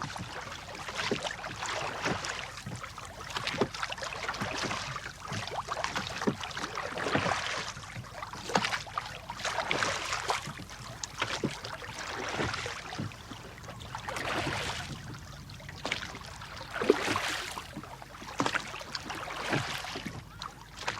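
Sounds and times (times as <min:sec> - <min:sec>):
oars splashing through water: 0:00.0 - 0:20.9.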